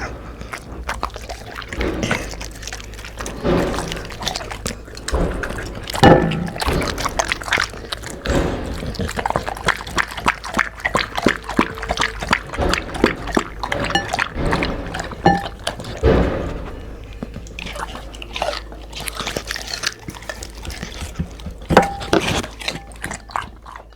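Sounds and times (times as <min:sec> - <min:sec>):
dogs licking and chewing food: 0:00.0 - 0:23.9
knocks against dish: 0:06.0 - 0:07.3, 0:12.6 - 0:16.7, 0:21.7 - 0:23.0.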